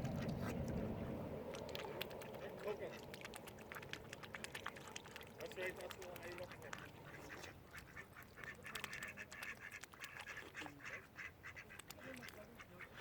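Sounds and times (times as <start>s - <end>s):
ducks quacking: 5.6s - 13.0s.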